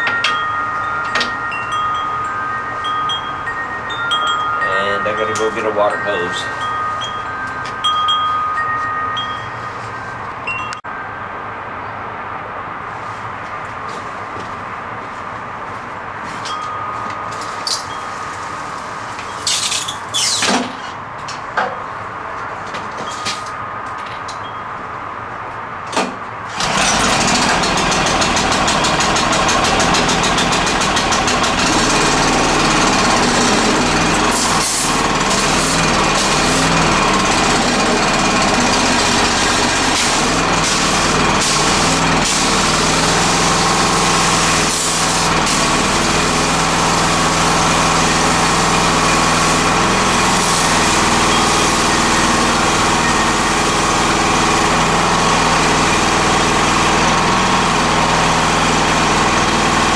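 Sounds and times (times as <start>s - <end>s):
pressure washer engine running: 26.5s - 59.9s.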